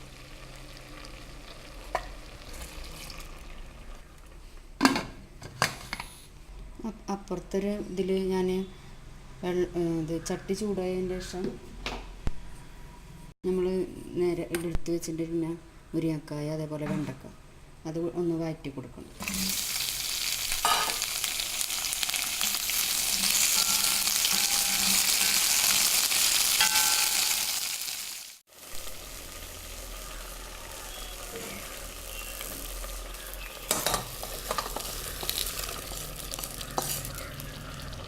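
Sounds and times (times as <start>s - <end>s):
food sizzling in a pan: 0.0s - 3.6s, 19.2s - 38.0s.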